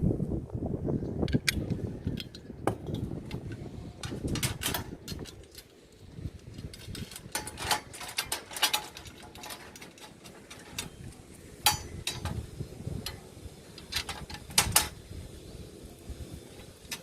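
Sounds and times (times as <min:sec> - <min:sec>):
metal tools clicking and knocking: 0:01.3 - 0:05.7, 0:06.4 - 0:12.4, 0:13.8 - 0:15.0.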